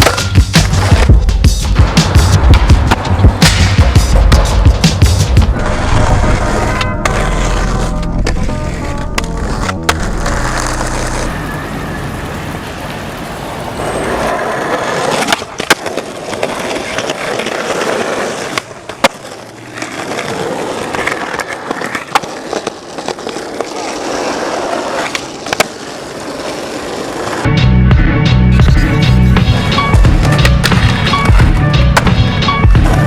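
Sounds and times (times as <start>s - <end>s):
skateboard landing clack: 0.0s - 1.1s
skateboard wheels rolling on pavement: 0.0s - 33.0s.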